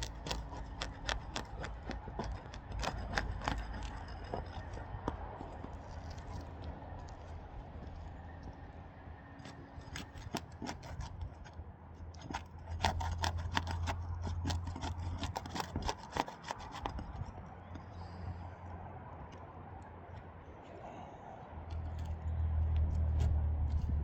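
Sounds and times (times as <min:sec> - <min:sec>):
low steady hum: 0:00.0 - 0:24.0
roof shingles crackling as peeled: 0:12.2 - 0:17.2.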